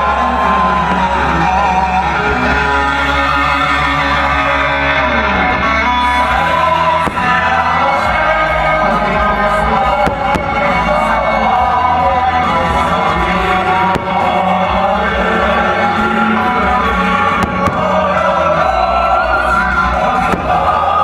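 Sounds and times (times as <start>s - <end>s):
rock music with singing: 0.0s - 21.0s
fireworks cracking: 5.5s - 19.0s, 19.9s - 21.0s.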